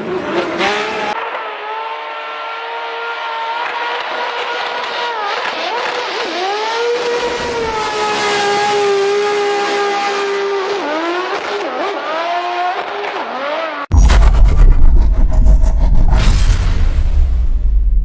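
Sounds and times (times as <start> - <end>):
car engine at high revs: 0.0 - 17.3.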